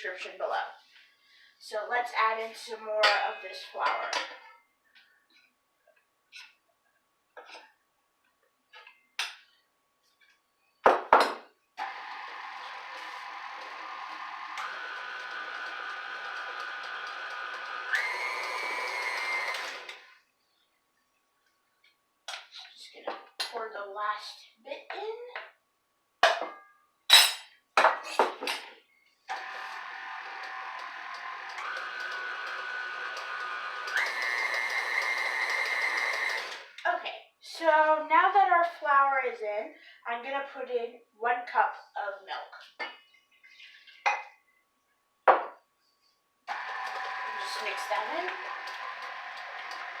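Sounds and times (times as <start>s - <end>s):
electric mixer running: 11.8s - 20.2s, 29.3s - 36.8s, 46.5s - 50.0s.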